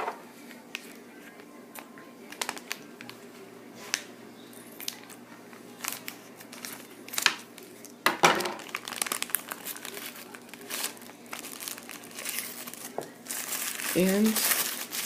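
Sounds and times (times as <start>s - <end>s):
plastic packet crinkling and tearing: 2.2s - 3.2s, 4.8s - 15.0s.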